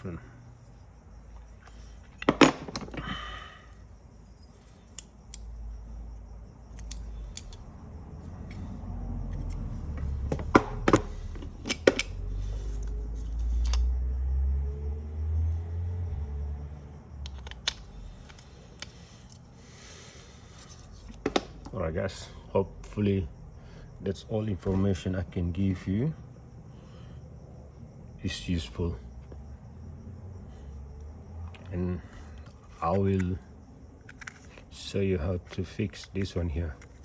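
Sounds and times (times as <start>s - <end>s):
small metal parts clinking: 17.2s - 19.5s, 34.0s - 34.8s, 36.1s - 37.0s.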